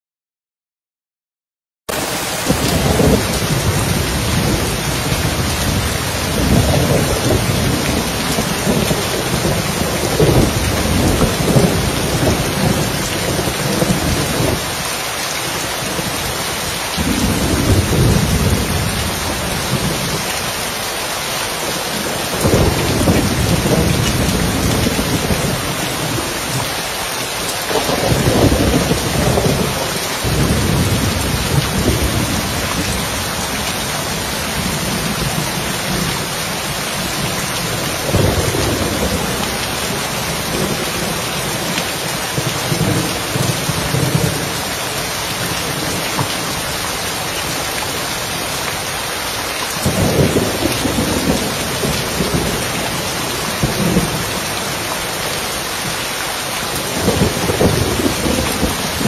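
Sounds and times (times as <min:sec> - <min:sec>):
rain falling on a roof: 0:01.9 - 0:59.0
low rolling thunder: 0:02.0 - 0:14.7, 0:17.0 - 0:20.3, 0:21.7 - 0:26.6, 0:27.7 - 0:36.3, 0:37.0 - 0:44.7, 0:49.8 - 0:54.8, 0:56.7 - 0:59.0.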